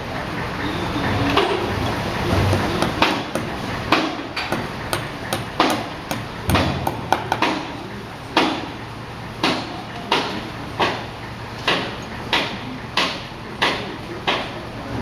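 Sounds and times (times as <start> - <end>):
hammer blows: 2.2 - 7.8.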